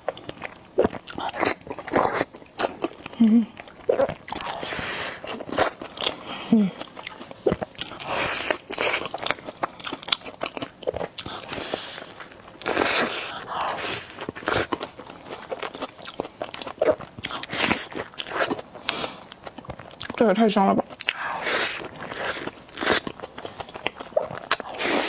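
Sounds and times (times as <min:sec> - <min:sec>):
crisp bites and chewing: 0:06.9 - 0:18.6
slurping noodles: 0:11.3 - 0:14.8, 0:24.6 - 0:25.0.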